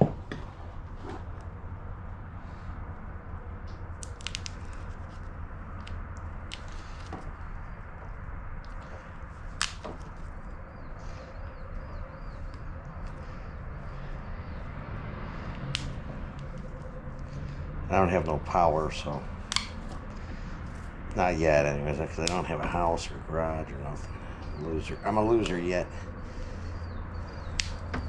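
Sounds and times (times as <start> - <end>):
steady low hum: 0.0 - 28.0
wire stripper clicks and snaps: 15.5 - 16.0, 19.5 - 19.8, 27.5 - 28.0.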